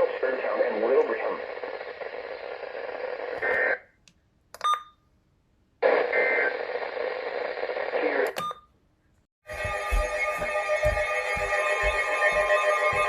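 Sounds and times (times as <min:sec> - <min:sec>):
radio static hiss: 0:00.0 - 0:03.8, 0:05.8 - 0:08.3
short electronic beeps and clicks: 0:04.6 - 0:05.0.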